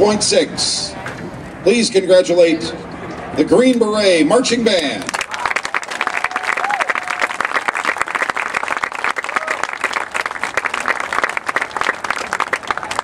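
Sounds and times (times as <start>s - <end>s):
crowd applauding: 5.0s - 13.0s.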